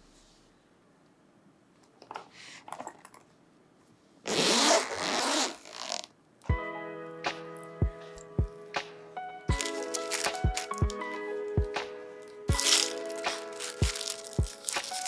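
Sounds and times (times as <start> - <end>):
packaging scraping and rustling: 9.6 - 10.8, 12.6 - 15.0.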